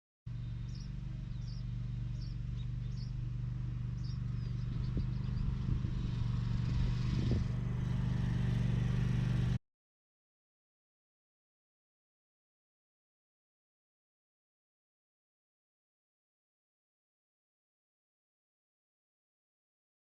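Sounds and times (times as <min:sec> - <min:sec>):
birds chirping: 0:00.3 - 0:08.6
lawn mower engine running: 0:00.3 - 0:09.6.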